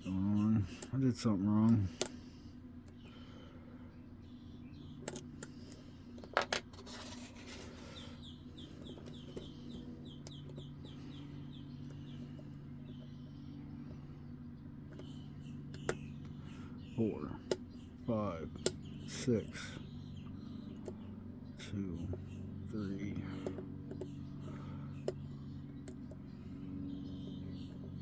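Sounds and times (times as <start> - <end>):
lock picks clicking in a lock: 5.0 - 5.6.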